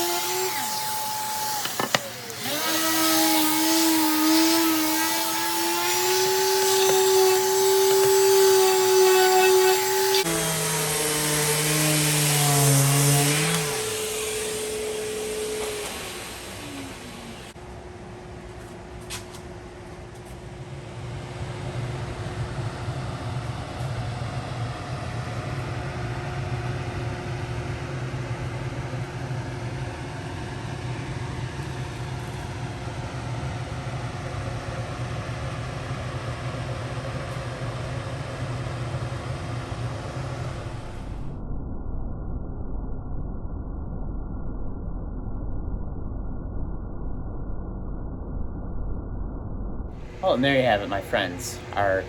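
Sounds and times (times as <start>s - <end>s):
electric power tool motor running: 0.0s - 17.6s.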